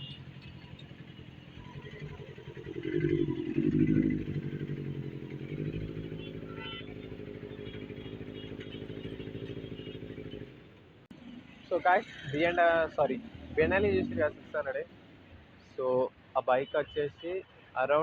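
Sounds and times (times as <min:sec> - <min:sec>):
motorcycle engine idling: 0:00.0 - 0:11.6.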